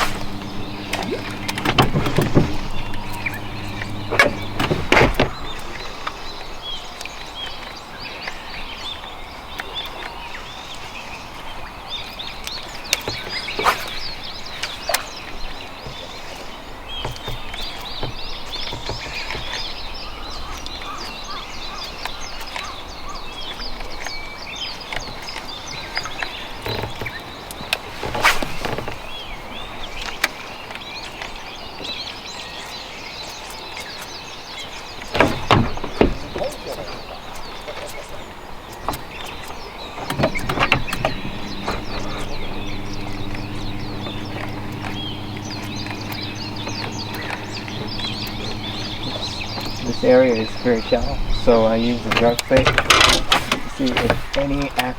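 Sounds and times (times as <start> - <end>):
steady outdoor hiss: 0.0 - 6.0, 39.4 - 53.0
birds chirping and calling: 39.4 - 52.5.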